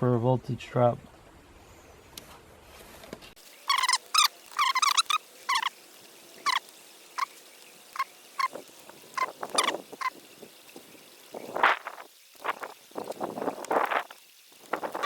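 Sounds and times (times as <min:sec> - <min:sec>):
bird calling with sharp notes: 0:03.5 - 0:05.8, 0:06.4 - 0:06.6, 0:09.2 - 0:10.2.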